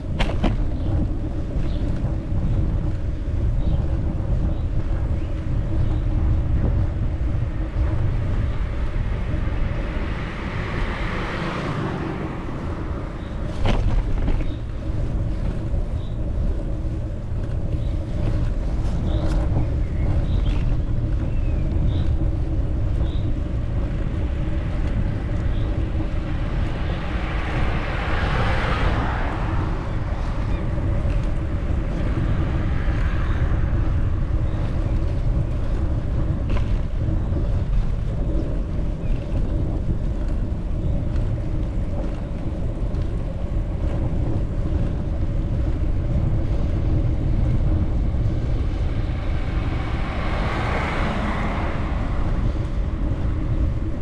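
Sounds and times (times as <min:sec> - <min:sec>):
wind buffeting microphone: 0:00.0 - 0:54.0
broad rushing swell: 0:06.9 - 0:13.9, 0:25.7 - 0:34.6, 0:47.5 - 0:54.0.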